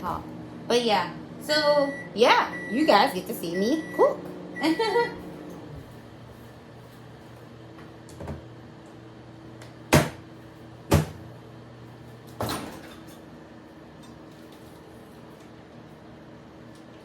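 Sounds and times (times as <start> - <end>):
kitchen knocks and clacks: 9.9 - 10.2, 10.9 - 11.2.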